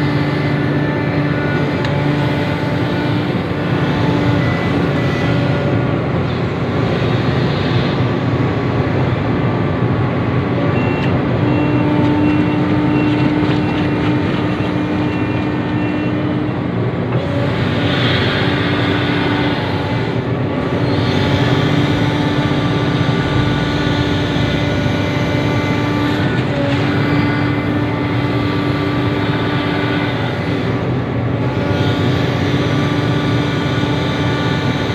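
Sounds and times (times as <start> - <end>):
excavator diesel engine running: 0.0 - 34.9
high reversing alarm beeps: 10.7 - 16.2.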